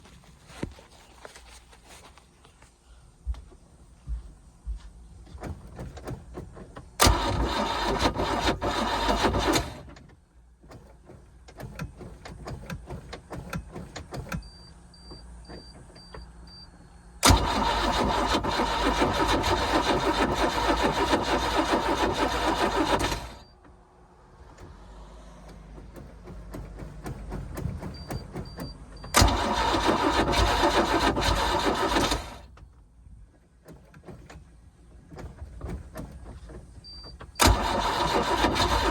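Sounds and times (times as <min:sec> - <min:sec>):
starter cranking boat engine: 0:05.7 - 0:10.0, 0:17.2 - 0:23.4, 0:29.1 - 0:32.5, 0:37.2 - 0:38.9
sharp starter click: 0:07.0 - 0:10.0, 0:17.2 - 0:23.4, 0:37.4 - 0:38.9.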